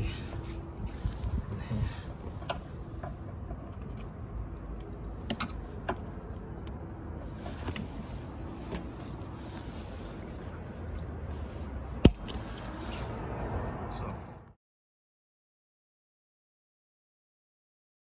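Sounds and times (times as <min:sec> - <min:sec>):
steady low rumble: 0:00.0 - 0:14.5
clicks and knocks of tools: 0:02.4 - 0:06.8.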